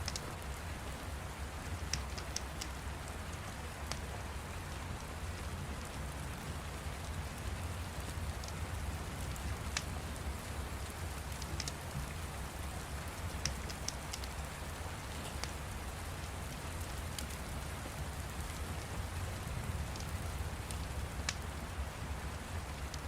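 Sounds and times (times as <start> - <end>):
steady rain: 0.0 - 23.0
crackling fire pops: 1.9 - 2.7, 11.2 - 15.7, 18.2 - 21.6.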